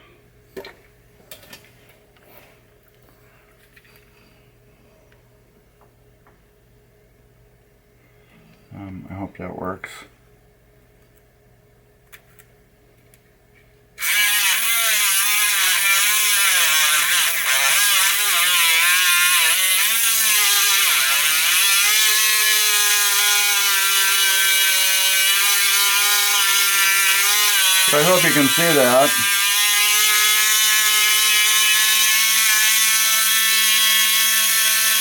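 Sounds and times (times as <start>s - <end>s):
rotary tool high whine: 14.0s - 35.0s.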